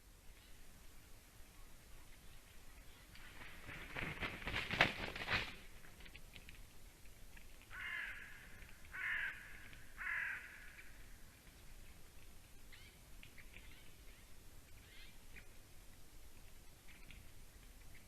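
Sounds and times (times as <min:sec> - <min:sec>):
crackling and rustling: 0:02.4 - 0:07.8
bird harsh cawing calls: 0:07.7 - 0:11.2.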